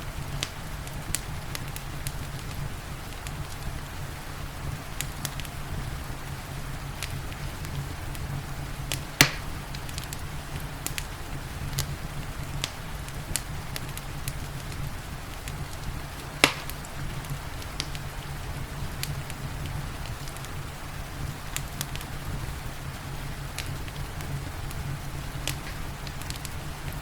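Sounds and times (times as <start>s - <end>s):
wood fire crackling: 0.0s - 27.0s
loud fire pop: 8.9s - 9.6s, 16.4s - 16.9s.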